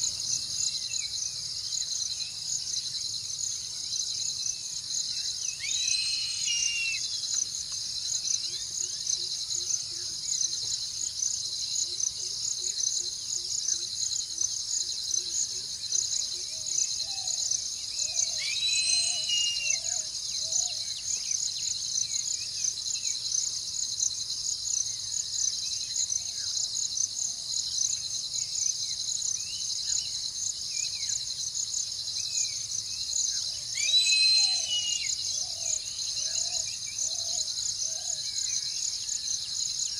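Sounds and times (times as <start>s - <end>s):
bird calls: 5.2s - 7.3s, 16.4s - 21.4s, 33.3s - 39.2s.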